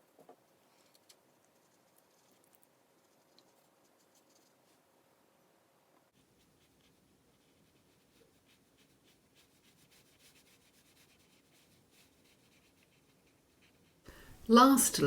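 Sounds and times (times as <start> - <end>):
brush scratching on paper: 1.5 - 4.9, 6.1 - 14.0.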